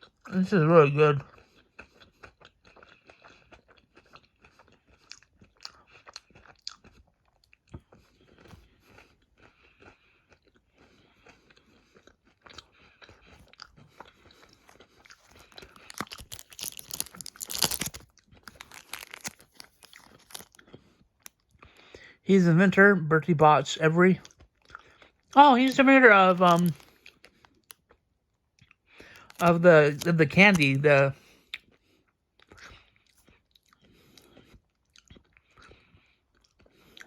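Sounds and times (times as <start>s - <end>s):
chewing and mouth sounds: 1.1s - 22.2s, 24.2s - 37.0s
wrapper rustling: 15.2s - 20.6s, 25.6s - 26.8s, 29.1s - 30.8s.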